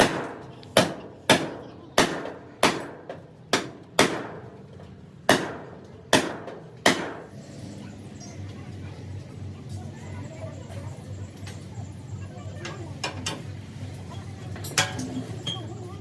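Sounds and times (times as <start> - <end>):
hammer striking sheet metal: 0.0 - 4.5, 5.3 - 7.3.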